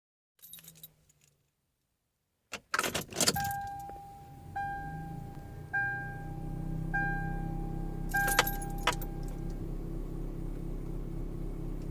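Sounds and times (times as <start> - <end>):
car keys jangling: 0.4 - 1.5, 2.5 - 6.0, 7.4 - 9.6
dashboard warning chime: 3.2 - 9.6
low hum: 3.4 - 11.9.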